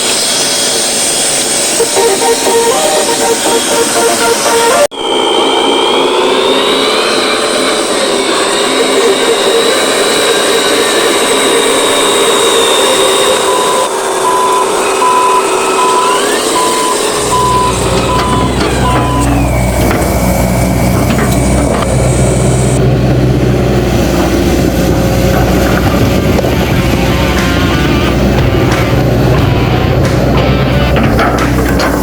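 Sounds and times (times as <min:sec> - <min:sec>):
reversing beeper beeping: 0:01.8 - 0:22.8
truck engine running: 0:07.6 - 0:32.0
deep engine rumble: 0:16.4 - 0:32.0.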